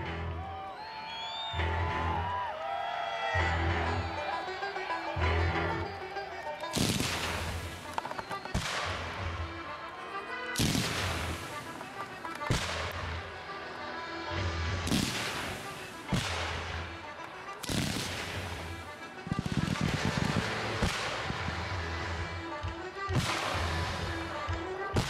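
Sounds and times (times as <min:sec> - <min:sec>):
fireworks shells bursting: 0:06.6 - 0:09.2, 0:10.6 - 0:13.1, 0:14.8 - 0:21.4.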